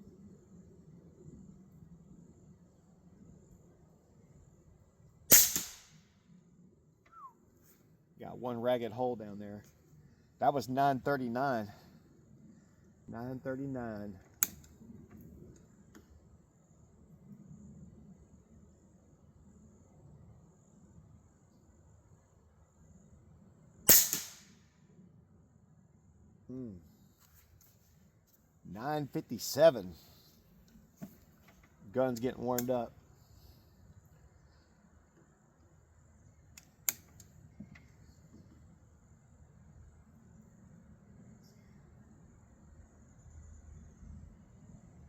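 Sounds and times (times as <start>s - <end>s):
crickets chirping: 0.0s - 45.0s
faint hiss: 0.0s - 45.0s
air rifle shot crack: 5.3s - 6.0s, 23.9s - 24.6s.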